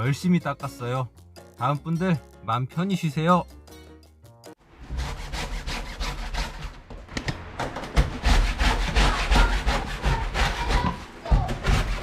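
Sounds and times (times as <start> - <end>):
rhythmic scrubbing: 8.0 - 12.0.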